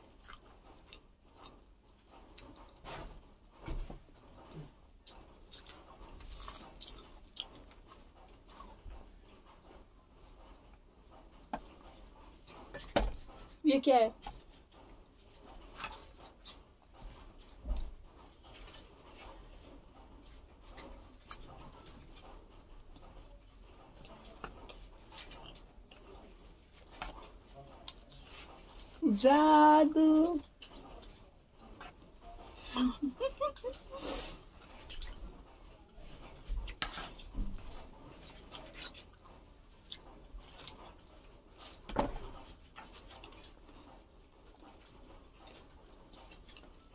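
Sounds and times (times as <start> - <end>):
soft mouth eating noises: 0.0 - 2.8, 33.6 - 35.4
chewing with clicks and smacks: 0.0 - 13.6, 14.2 - 29.0, 30.3 - 46.9.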